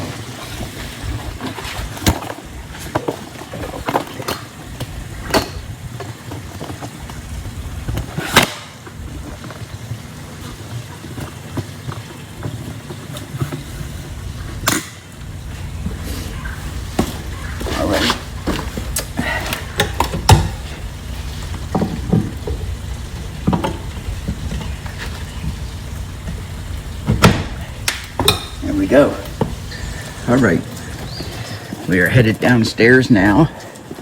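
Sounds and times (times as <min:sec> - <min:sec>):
steady low rumble: 0:13.9 - 0:31.4.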